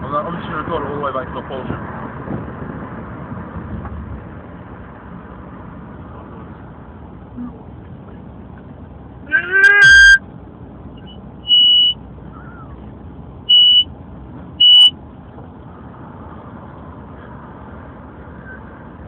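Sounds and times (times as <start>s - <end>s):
moving car noise: 0.0s - 19.0s
megaphone beeps: 9.6s - 10.2s, 11.0s - 12.0s, 13.5s - 13.9s, 14.6s - 14.9s.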